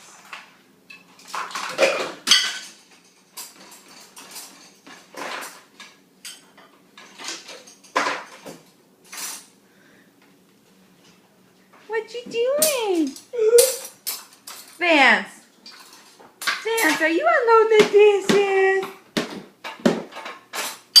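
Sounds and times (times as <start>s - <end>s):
dishes and cutlery clattering: 0.9s - 9.5s, 12.6s - 14.8s, 15.6s - 17.1s, 19.6s - 21.0s.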